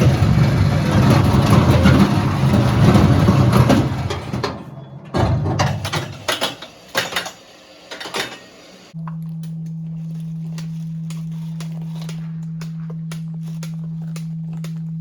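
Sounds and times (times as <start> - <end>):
vehicle low rumble: 0.0 - 5.3.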